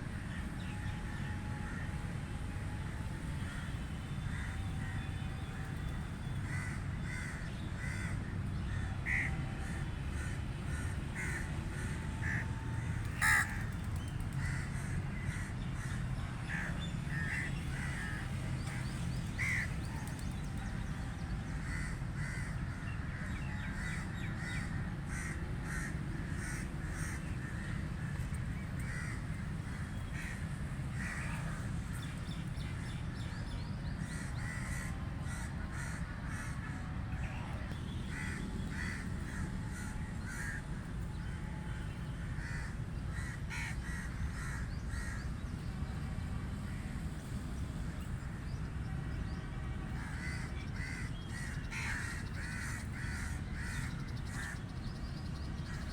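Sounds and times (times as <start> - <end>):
crows cawing: 6.4 - 13.8, 14.4 - 18.8, 19.4 - 20.0, 21.6 - 27.8, 28.8 - 31.6, 34.0 - 36.8, 38.1 - 40.7, 42.4 - 45.2, 50.0 - 54.6.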